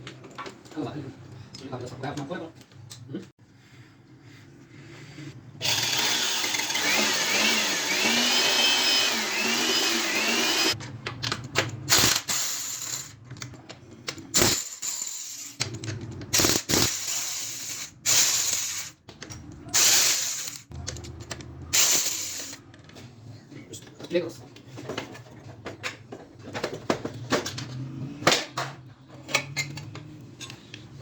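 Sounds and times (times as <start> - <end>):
power tool whining: 5.6 - 10.8.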